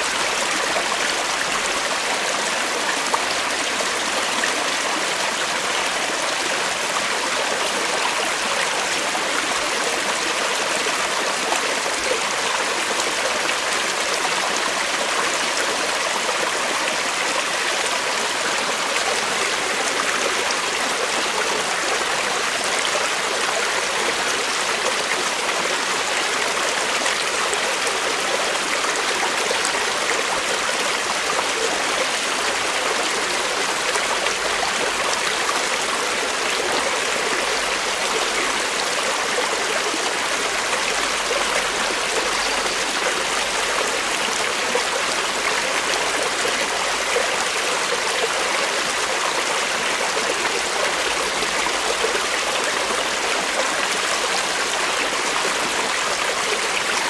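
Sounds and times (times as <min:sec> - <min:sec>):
creek water flowing over rocks: 0:00.0 - 0:57.0.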